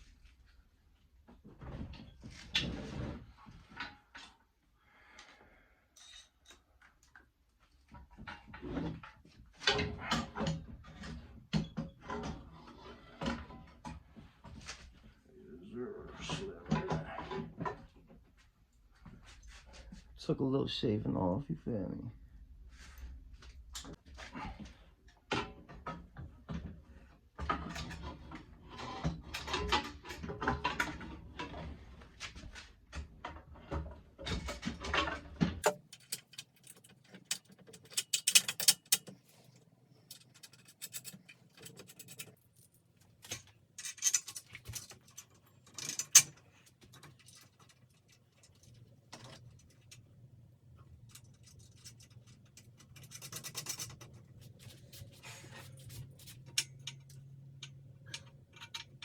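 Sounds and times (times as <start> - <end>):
hand tools clicking on metal parts: 35.6 - 50.0, 51.0 - 59.0.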